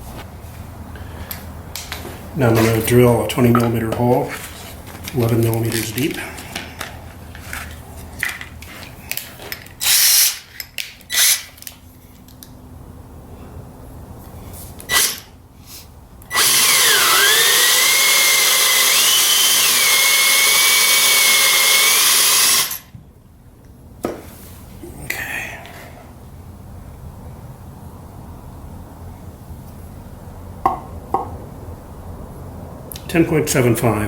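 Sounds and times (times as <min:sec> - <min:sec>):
power drill boring into wood: 0:09.8 - 0:10.4, 0:14.9 - 0:15.2, 0:16.3 - 0:22.9.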